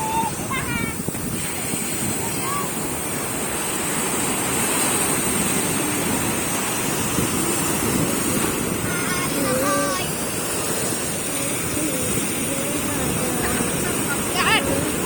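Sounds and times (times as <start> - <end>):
sea surf washing: 0.0 - 15.0
person calling out: 11.3 - 15.0.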